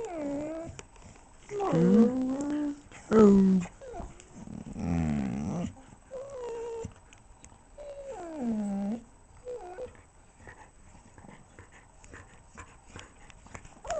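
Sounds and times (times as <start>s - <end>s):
dog whining: 0.0s - 0.8s, 1.5s - 7.0s, 7.8s - 10.0s.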